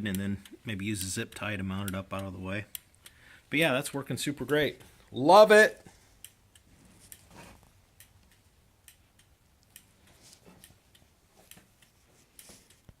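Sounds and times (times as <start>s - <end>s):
flasher relay clicking: 0.0s - 4.8s, 7.9s - 10.0s.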